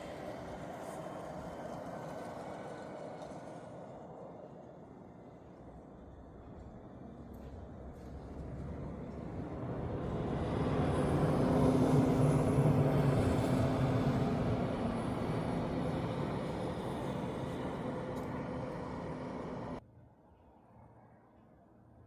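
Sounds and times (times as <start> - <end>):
vehicle engine passing by: 8.0 - 19.8.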